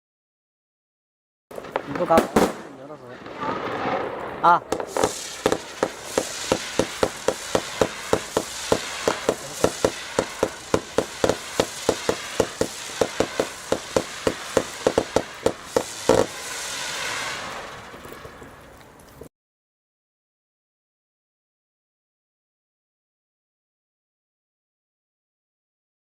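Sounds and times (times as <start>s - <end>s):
firework cake popping: 1.5s - 19.3s
firework hiss and crackle: 1.5s - 19.3s.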